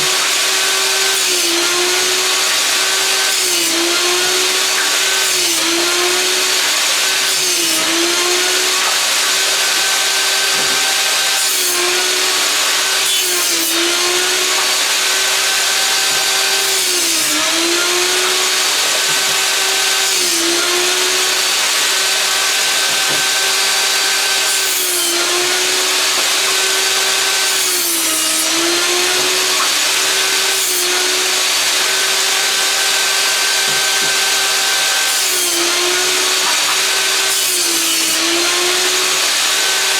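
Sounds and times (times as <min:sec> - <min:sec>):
table saw cutting wood: 0:00.0 - 0:39.9.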